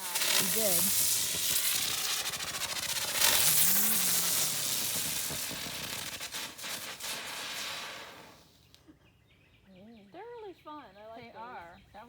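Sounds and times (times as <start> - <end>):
fireworks hissing and crackling: 0.0 - 8.7.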